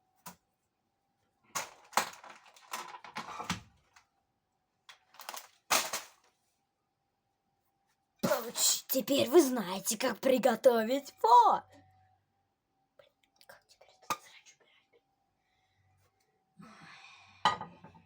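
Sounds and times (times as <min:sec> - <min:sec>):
faint steady tone: 0:11.0 - 0:17.6.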